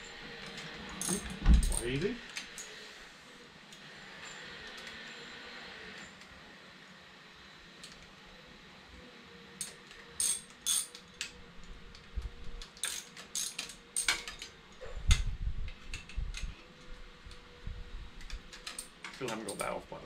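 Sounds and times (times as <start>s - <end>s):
metallic clicks of hand tools: 9.6s - 16.6s, 18.2s - 19.8s.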